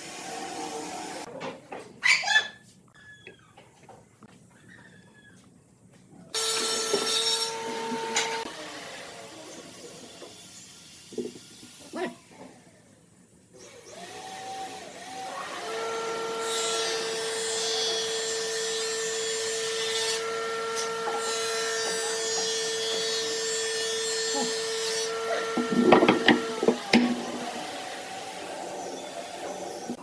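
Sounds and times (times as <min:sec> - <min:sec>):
power tool cutting wood: 0:00.0 - 0:01.3, 0:06.4 - 0:11.9, 0:13.6 - 0:30.0
electric power tool running: 0:06.4 - 0:11.8, 0:13.6 - 0:30.0.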